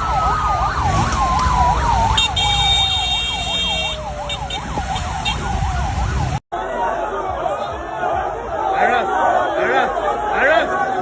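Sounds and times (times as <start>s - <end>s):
siren yelping warble: 0.0s - 6.4s
vehicle rumble: 0.0s - 6.4s.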